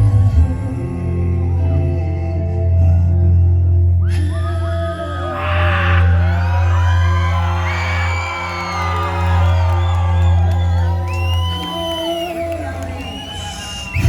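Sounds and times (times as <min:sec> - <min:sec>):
crowd singing along and whooping: 0:04.1 - 0:14.0.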